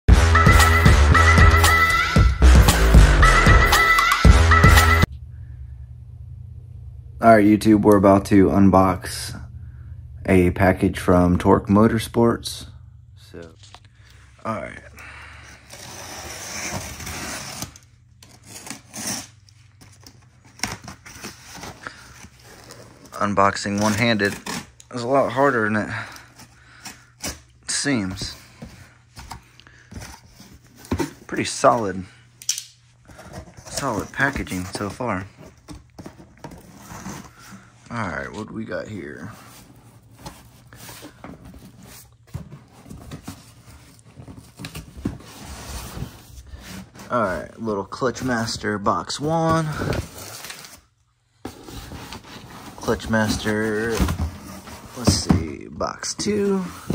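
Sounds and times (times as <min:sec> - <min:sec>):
packaging rustling and scraping: 0:15.4 - 0:32.1, 0:32.9 - 0:56.9.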